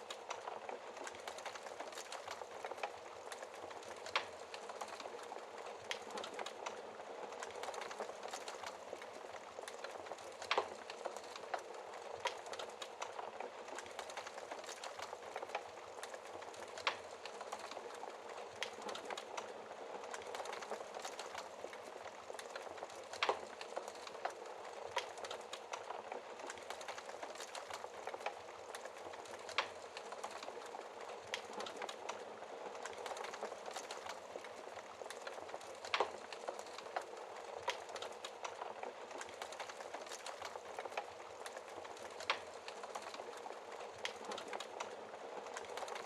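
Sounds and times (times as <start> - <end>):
wood fire crackling: 0.0 - 46.0.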